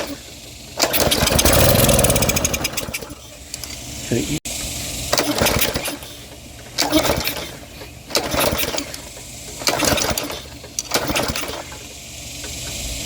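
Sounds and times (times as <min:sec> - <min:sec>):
small engine pull-start cranking: 0:00.9 - 0:03.0.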